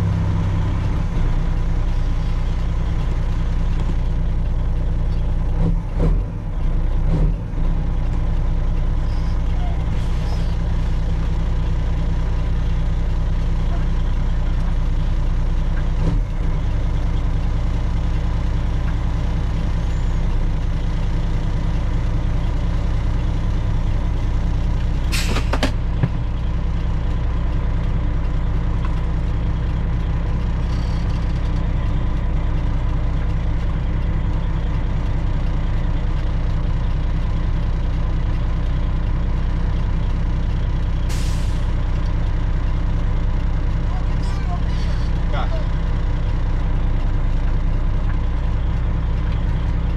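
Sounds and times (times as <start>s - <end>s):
diesel truck engine idling: 0.0s - 49.9s
air brake hiss: 25.1s - 25.6s, 41.1s - 41.7s.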